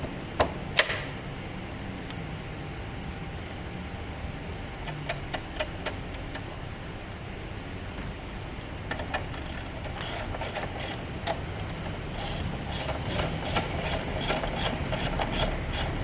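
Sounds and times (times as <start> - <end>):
ratchet wrench clicking: 9.0 - 11.0, 11.6 - 16.0.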